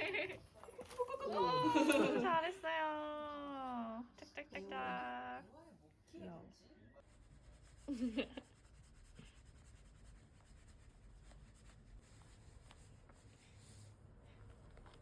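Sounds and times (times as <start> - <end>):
faint rubbing and scratching: 7.0 - 15.0.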